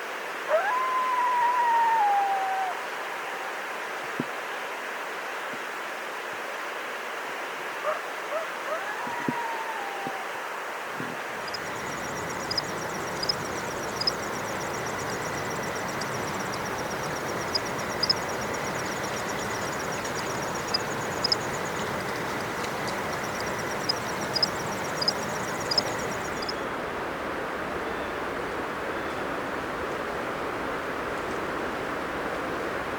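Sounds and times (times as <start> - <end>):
flowing water rushing: 11.3 - 26.5
small birds chipping: 11.4 - 26.6.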